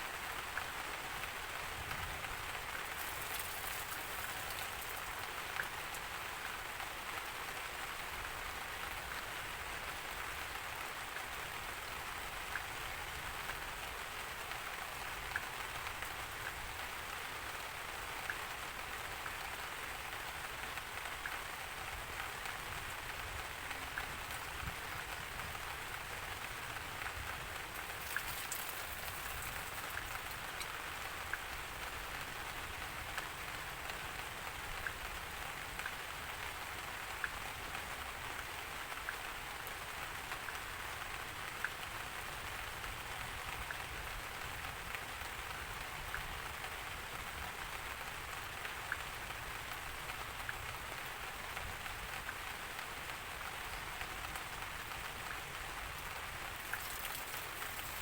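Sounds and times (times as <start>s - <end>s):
steady rain hiss: 0.0s - 58.0s
raindrop ticks: 1.9s - 6.3s, 26.5s - 31.6s, 55.9s - 58.0s.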